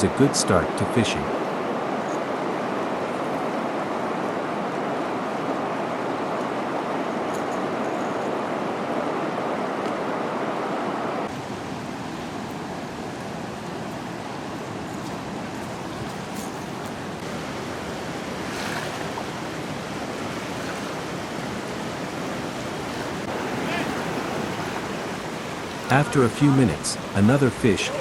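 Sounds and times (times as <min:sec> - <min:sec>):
fast-flowing river water: 0:00.0 - 0:28.0.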